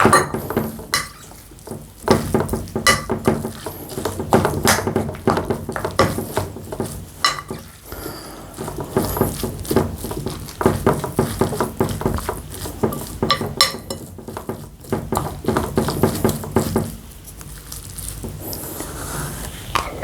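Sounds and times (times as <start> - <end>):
spoon scraping a bowl: 0.0 - 1.6, 5.7 - 16.9.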